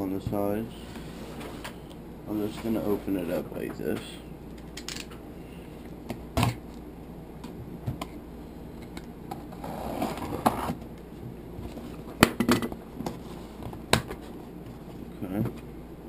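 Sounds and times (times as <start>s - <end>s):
rustling and scraping: 0.2s - 4.0s, 11.6s - 12.2s, 12.9s - 15.6s.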